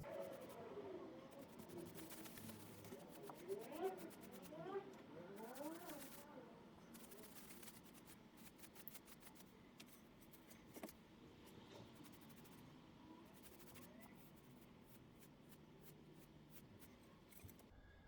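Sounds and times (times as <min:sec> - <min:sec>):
paintbrush strokes on board: 0:01.3 - 0:04.6, 0:05.4 - 0:06.2, 0:06.9 - 0:11.0, 0:11.8 - 0:17.5.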